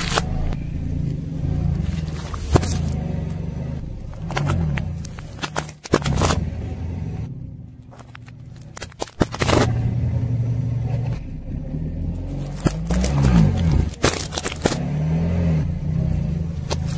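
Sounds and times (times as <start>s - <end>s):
tyre crushing objects with cracks: 0.0s - 0.5s, 1.8s - 6.6s, 7.8s - 10.0s, 12.2s - 15.4s, 16.6s - 16.9s
car engine running at low speed: 0.0s - 16.9s.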